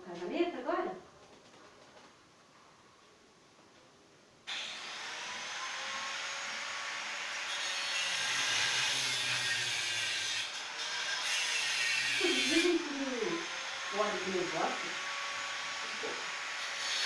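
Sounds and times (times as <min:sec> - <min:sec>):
small electric appliance whirring: 0:04.5 - 0:17.0.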